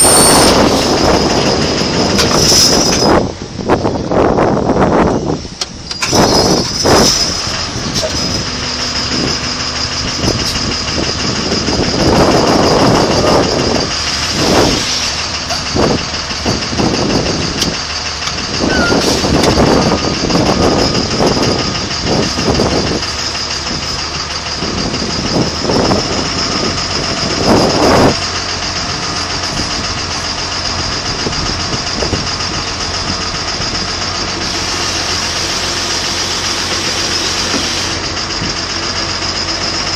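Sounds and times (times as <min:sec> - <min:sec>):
loud noise bursts: 0:00.0 - 0:03.3
constant high whine: 0:00.0 - 0:39.9
heavy engine idling: 0:00.0 - 0:39.9.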